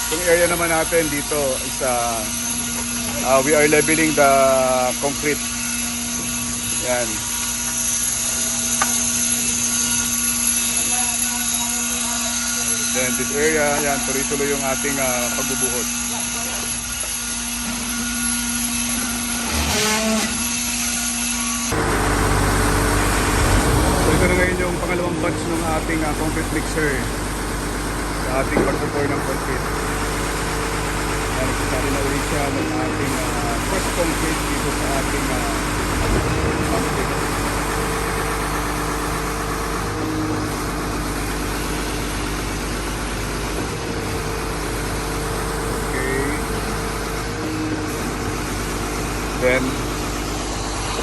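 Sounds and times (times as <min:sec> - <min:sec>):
motor hum: 0:00.0 - 0:51.0
diesel engine rumble: 0:21.7 - 0:51.0.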